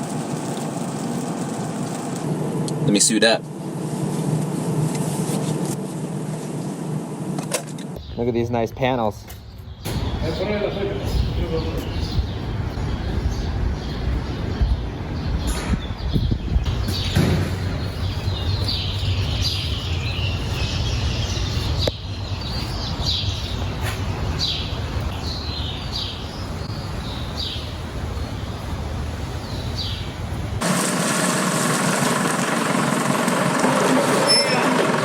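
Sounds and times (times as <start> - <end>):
small birds chirping: 8.0 - 30.4
engine running: 30.6 - 35.0.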